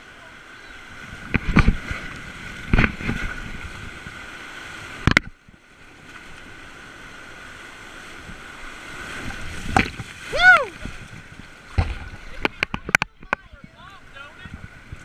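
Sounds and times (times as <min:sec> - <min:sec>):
rushing river water: 0:00.0 - 0:15.0
sharp knocks on raft: 0:09.6 - 0:10.1.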